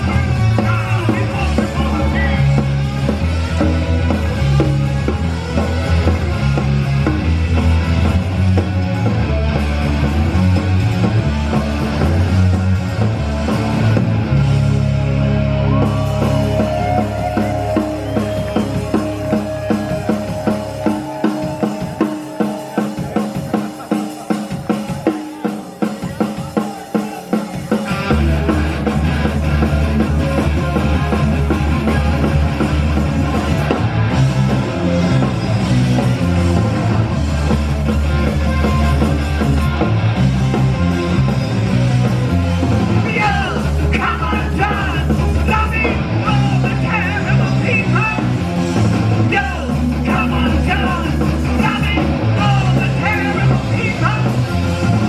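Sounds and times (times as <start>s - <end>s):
punk rock band playing live: 0.0s - 55.0s
fast sharp drum beat: 15.8s - 55.0s.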